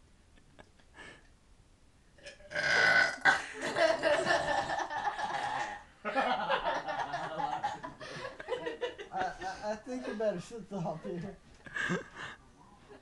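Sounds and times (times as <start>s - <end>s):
woman burping: 2.2s - 3.6s.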